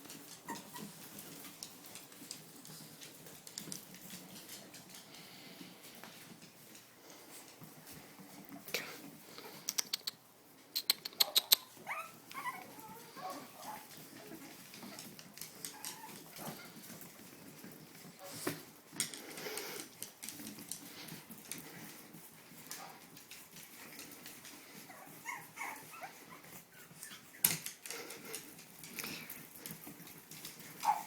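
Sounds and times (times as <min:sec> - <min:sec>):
puppies squeaking and whimpering: 0:00.4 - 0:01.4, 0:10.9 - 0:16.9, 0:24.8 - 0:28.3
sharp clicks: 0:09.6 - 0:10.2.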